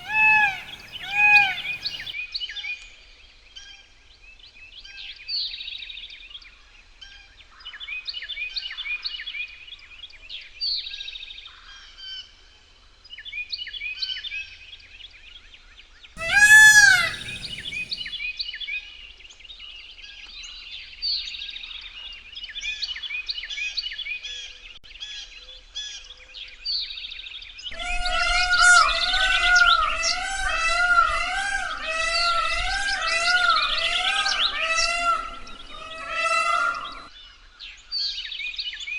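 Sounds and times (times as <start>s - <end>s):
peacock calling: 0.0s - 2.1s, 16.2s - 18.2s, 27.7s - 37.1s
small songbirds chirping: 0.0s - 2.1s, 16.2s - 18.1s.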